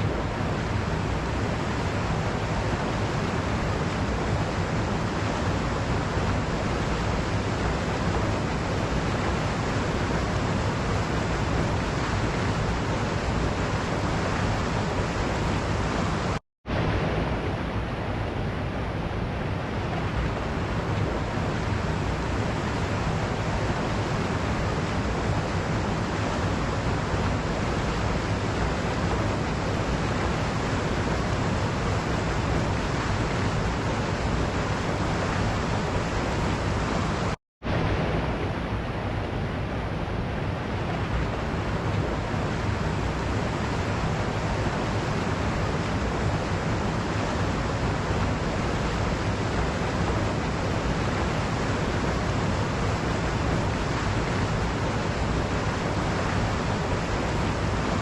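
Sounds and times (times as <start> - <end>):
waterfall rushing: 19.2 - 58.0.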